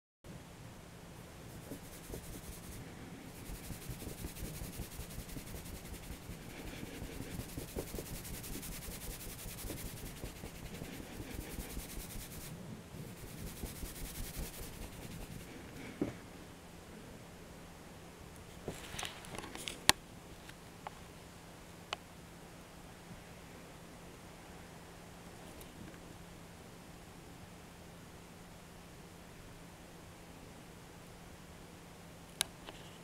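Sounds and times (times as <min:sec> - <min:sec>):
fingers scratching dry hair: 0:01.5 - 0:16.0.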